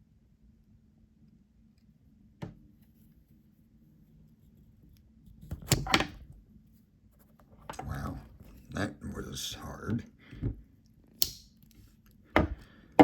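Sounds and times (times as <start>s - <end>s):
pocketknife blade clicking: 11.2s - 11.5s
clicks and knocks of forced blade: 11.2s - 11.6s.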